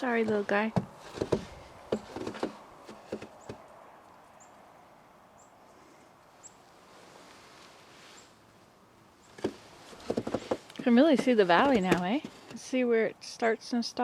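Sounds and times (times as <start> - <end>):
small bird chirping: 4.3 - 4.6, 5.3 - 5.8, 6.4 - 6.7.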